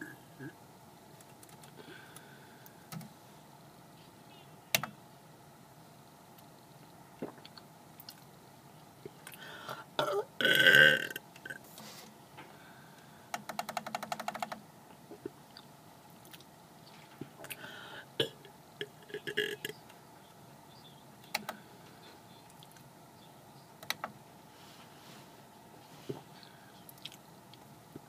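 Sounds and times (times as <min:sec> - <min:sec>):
person belching: 0:10.0 - 0:11.6, 0:18.2 - 0:19.8.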